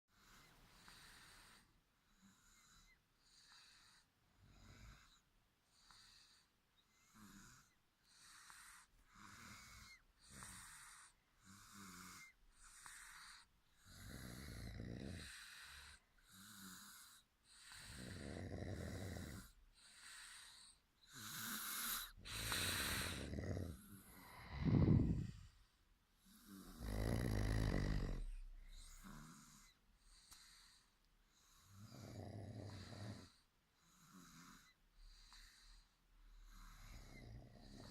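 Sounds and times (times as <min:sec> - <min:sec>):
people snoring: 0:07.0 - 0:25.5, 0:26.2 - 0:30.8, 0:31.4 - 0:35.8, 0:36.4 - 0:37.9.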